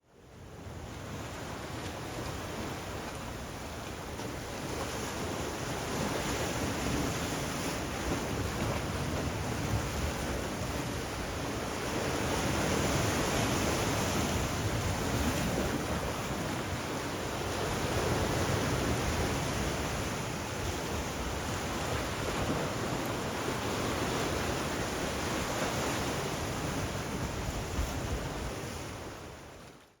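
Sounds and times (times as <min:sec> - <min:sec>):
small waves washing in: 0:00.3 - 0:29.9.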